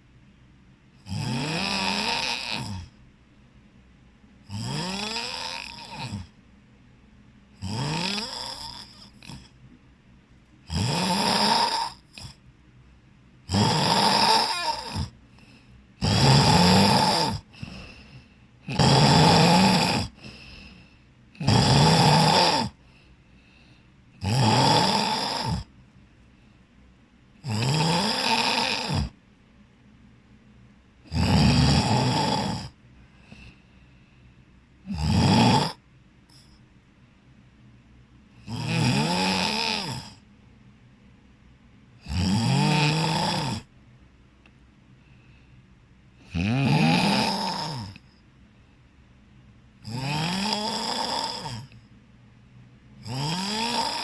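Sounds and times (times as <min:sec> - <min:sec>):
person snoring: 0:01.0 - 0:02.9, 0:04.5 - 0:06.3, 0:07.6 - 0:09.5, 0:10.7 - 0:12.4, 0:13.5 - 0:22.8, 0:24.2 - 0:25.7, 0:27.4 - 0:29.2, 0:31.1 - 0:33.6, 0:34.8 - 0:36.6, 0:38.4 - 0:40.2, 0:42.0 - 0:43.7, 0:46.2 - 0:48.0, 0:49.8 - 0:51.8, 0:53.0 - 0:54.0.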